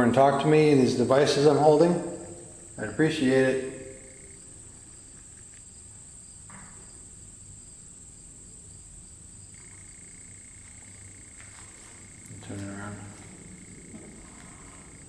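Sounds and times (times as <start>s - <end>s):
crickets high trill: 0.0s - 15.0s
lower cricket trill: 0.0s - 15.0s
soft rustle: 9.6s - 15.0s.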